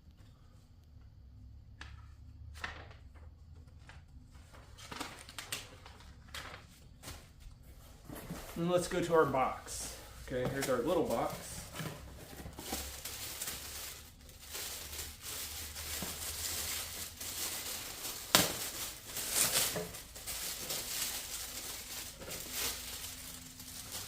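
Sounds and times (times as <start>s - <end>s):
packaging crinkling: 8.6s - 24.0s.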